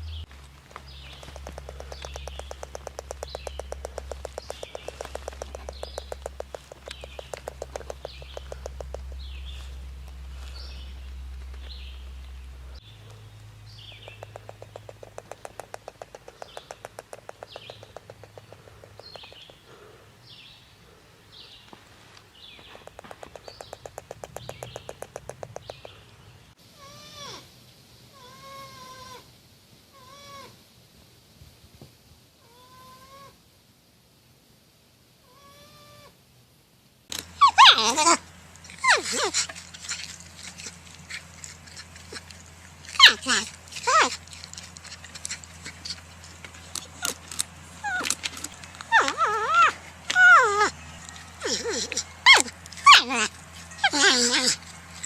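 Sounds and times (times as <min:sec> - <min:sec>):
porcupine whining calls: 0:00.9 - 0:21.0, 0:22.7 - 0:27.5, 0:37.2 - 0:55.0
porcupine squeaks: 0:01.0 - 0:12.8, 0:13.9 - 0:19.6, 0:22.8 - 0:26.0, 0:37.2 - 0:55.0
fast rattling clicks: 0:01.1 - 0:09.2, 0:14.0 - 0:19.6, 0:22.9 - 0:26.0.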